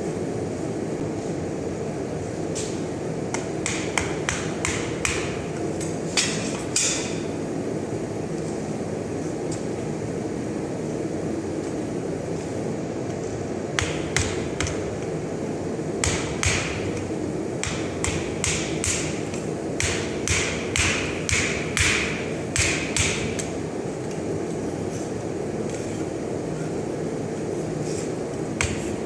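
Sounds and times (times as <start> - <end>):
hammer striking hot steel: 3.3 - 7.3, 13.8 - 15.1, 16.0 - 23.6, 28.6 - 29.0.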